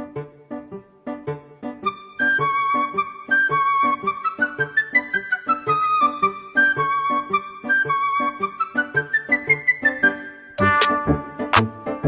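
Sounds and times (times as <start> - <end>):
flute-like melody over quick beat: 10.6 - 11.8.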